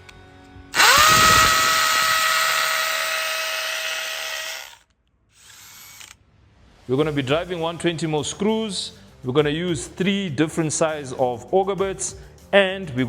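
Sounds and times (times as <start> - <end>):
drill motor whining: 0.8 - 6.2.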